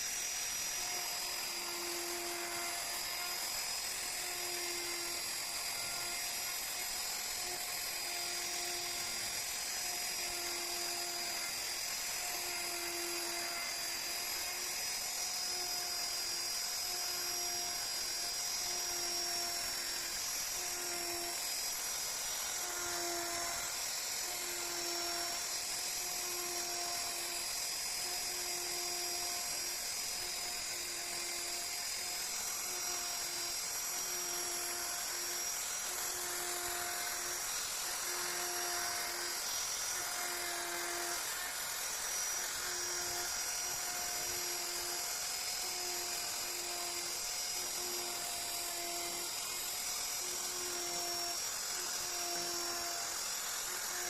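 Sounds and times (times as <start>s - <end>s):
electric carving tool whining: 0.0s - 54.0s.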